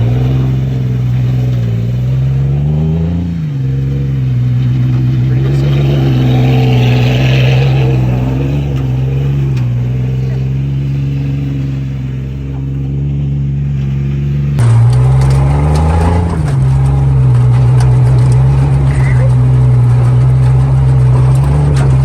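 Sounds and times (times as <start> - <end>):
engine idling: 0.0 - 22.0.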